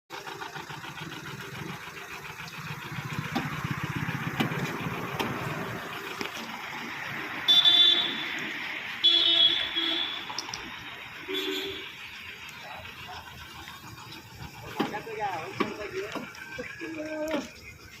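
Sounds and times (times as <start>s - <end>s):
vehicle horn honking: 7.4s - 10.5s, 11.2s - 12.0s.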